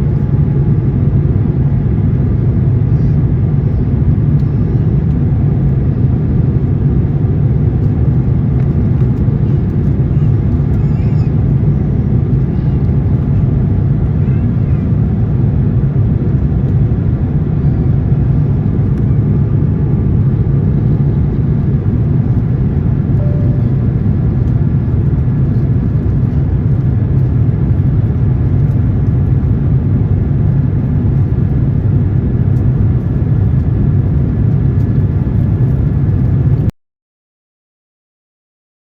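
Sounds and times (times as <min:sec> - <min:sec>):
airplane cabin engine drone: 0:00.0 - 0:36.7.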